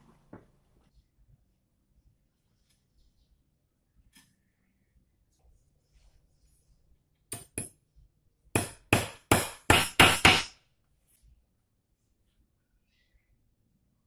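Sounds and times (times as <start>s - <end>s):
hammer striking: 7.3s - 7.8s, 8.6s - 10.6s.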